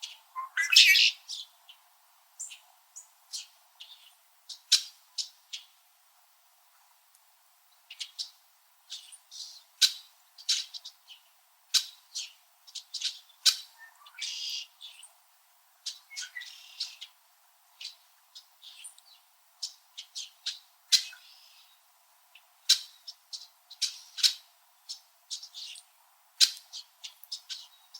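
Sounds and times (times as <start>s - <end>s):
longer noisy bird calls: 0.0s - 1.8s, 7.8s - 27.9s
birds chipping: 0.0s - 5.8s, 7.8s - 27.9s.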